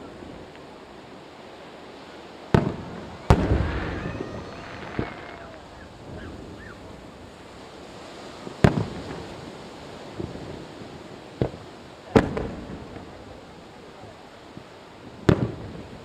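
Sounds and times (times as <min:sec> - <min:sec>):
firework shells bursting: 0:02.6 - 0:06.2.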